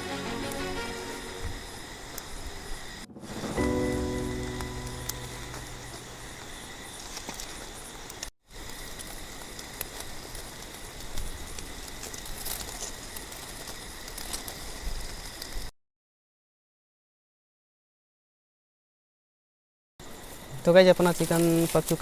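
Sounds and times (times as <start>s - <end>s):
faint high whine: 0.0s - 8.3s
campfire embers crackling: 0.0s - 15.7s, 20.7s - 22.0s.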